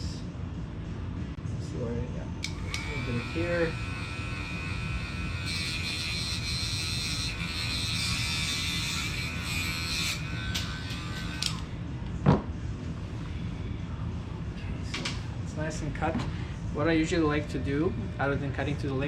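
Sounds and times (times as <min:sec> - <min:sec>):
cutting disc grinding: 0:02.5 - 0:11.7
rotary tool whine: 0:02.5 - 0:11.7.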